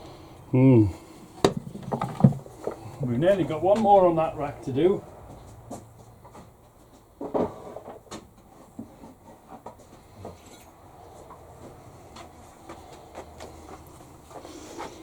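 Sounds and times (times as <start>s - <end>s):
tool cases knocking and clicking: 1.4s - 2.8s.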